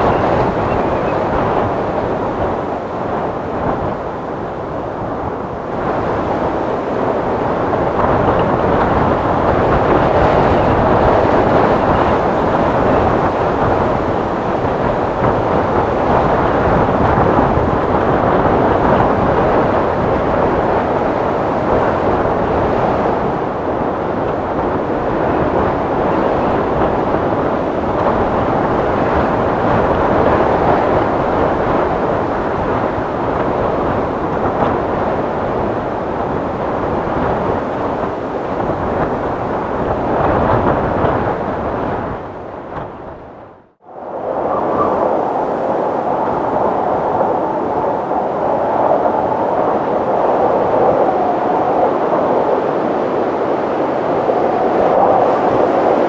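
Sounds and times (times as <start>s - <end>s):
rushing wind: 0.0s - 56.0s.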